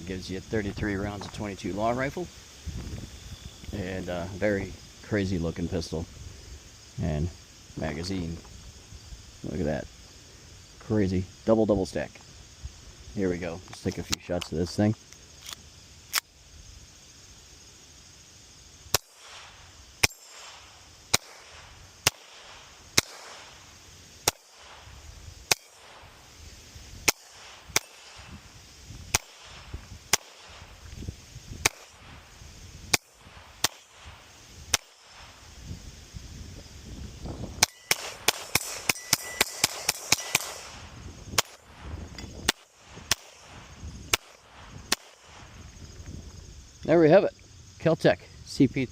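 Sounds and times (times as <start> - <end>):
wind noise on microphone: 0.0 - 9.9, 24.7 - 47.7
pistol shots: 18.9 - 23.6, 27.0 - 28.3, 29.1 - 30.7, 31.6 - 32.1, 32.9 - 35.3, 37.6 - 40.8, 42.5 - 45.4.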